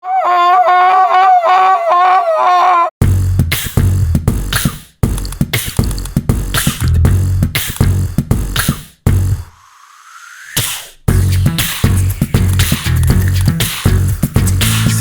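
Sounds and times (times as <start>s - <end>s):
deep pulsing bass: 3.0s - 9.5s, 11.1s - 15.0s
beatbox percussive mouth sounds: 3.3s - 9.6s, 10.6s - 15.0s.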